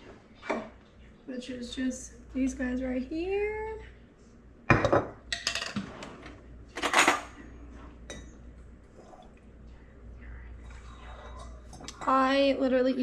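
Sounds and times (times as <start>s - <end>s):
cutlery clinking against dishes: 6.8s - 7.3s.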